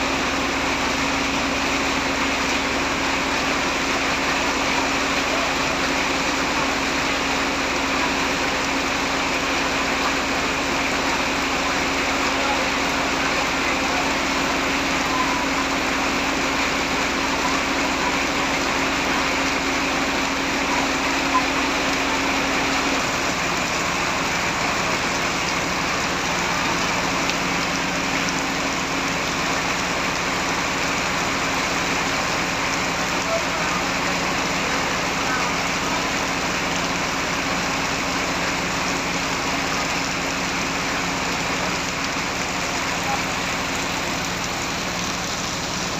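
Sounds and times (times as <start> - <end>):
engine idling: 0.0 - 45.9
heavy rain falling: 0.0 - 45.9.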